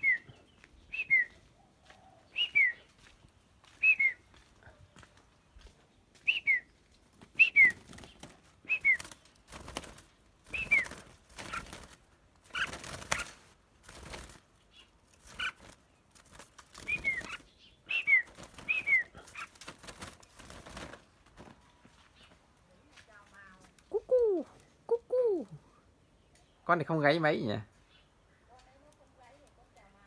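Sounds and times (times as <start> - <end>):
songbirds whistling two-note phrases: 0.0 - 1.4, 2.3 - 2.9, 3.8 - 4.3, 6.2 - 6.7.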